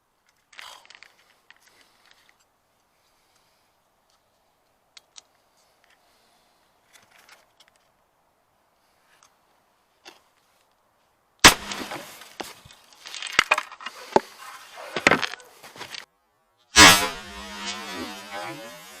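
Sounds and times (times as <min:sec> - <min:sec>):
airbag sharp bang: 0:11.4 - 0:12.2, 0:16.8 - 0:18.6.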